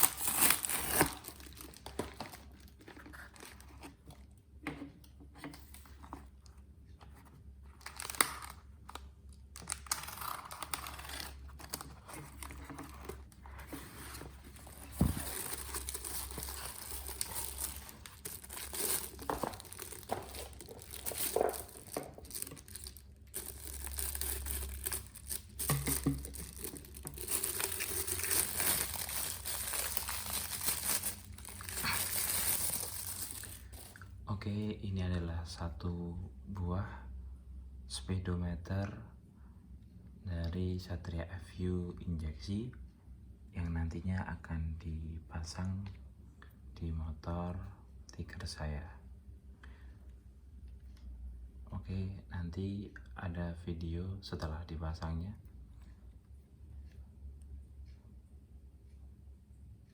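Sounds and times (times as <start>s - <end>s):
packaging crinkling and tearing: 0.0s - 4.0s, 7.8s - 13.3s, 14.5s - 34.0s.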